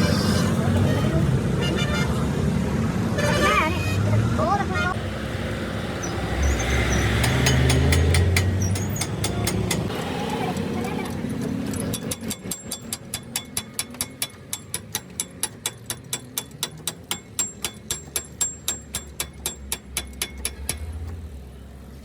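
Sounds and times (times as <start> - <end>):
hammering on metal: 6.9 - 10.0, 11.9 - 21.1
low engine rumble: 18.8 - 22.0.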